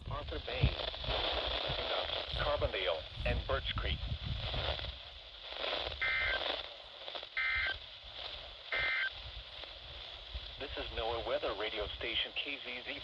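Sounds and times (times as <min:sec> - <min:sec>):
radio receiver hiss: 0:00.0 - 0:13.0
two-tone data tone bursts: 0:06.0 - 0:06.6, 0:07.4 - 0:07.8, 0:08.7 - 0:09.2.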